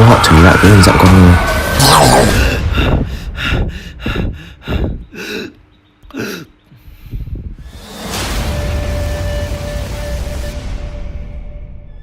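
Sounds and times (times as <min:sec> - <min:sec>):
person breathing hard and gasping: 0:02.2 - 0:07.6.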